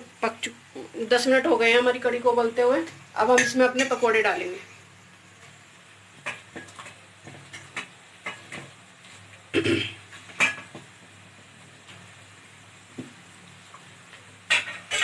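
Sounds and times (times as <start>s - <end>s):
pot clatter: 6.2s - 8.8s, 9.6s - 10.9s, 14.4s - 15.0s.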